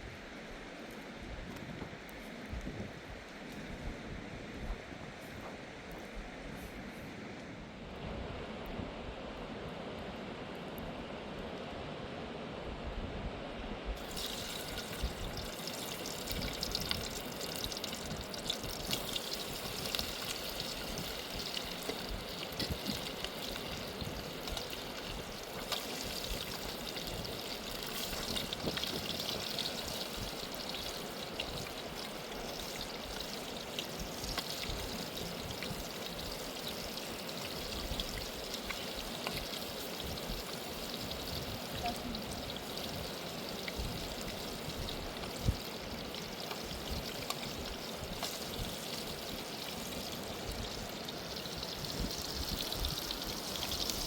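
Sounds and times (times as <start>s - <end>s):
water splashing and trickling: 14.0s - 54.0s.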